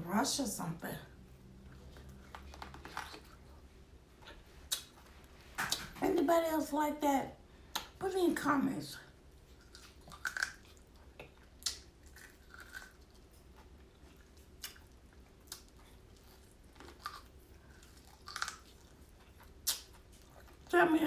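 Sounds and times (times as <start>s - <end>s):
person chewing food: 1.5s - 5.4s, 9.3s - 20.7s
wet mouth clicks and lip smacks: 4.7s - 5.0s, 9.6s - 13.0s, 14.6s - 15.8s, 18.1s - 20.0s.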